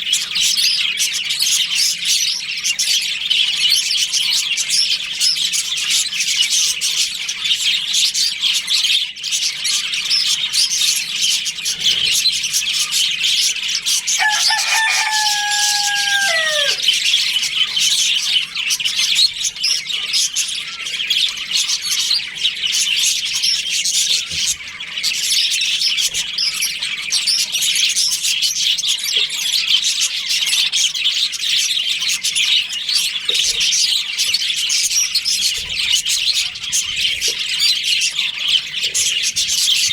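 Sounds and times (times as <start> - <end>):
budgerigars chattering and chirping: 0.0 - 39.9
rooster crowing: 14.1 - 17.2.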